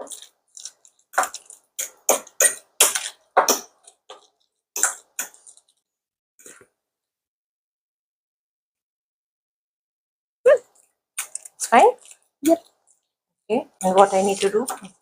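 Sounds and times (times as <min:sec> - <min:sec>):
utensil mashing avocado in bowl: 0:00.0 - 0:04.2.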